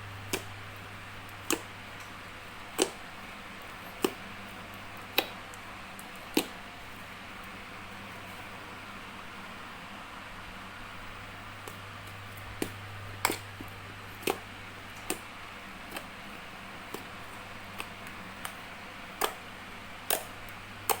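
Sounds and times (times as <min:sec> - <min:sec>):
steady low hum: 0:00.0 - 0:21.0
slime popping and clicking: 0:01.4 - 0:01.7, 0:02.7 - 0:03.0, 0:06.3 - 0:06.5, 0:19.2 - 0:19.4, 0:20.1 - 0:20.3.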